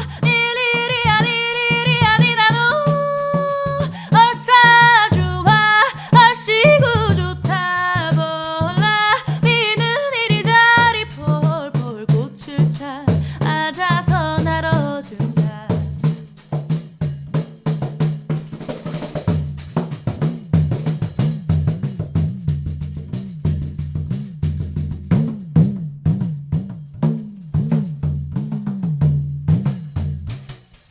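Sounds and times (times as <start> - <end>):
woman singing: 0.0 - 16.1.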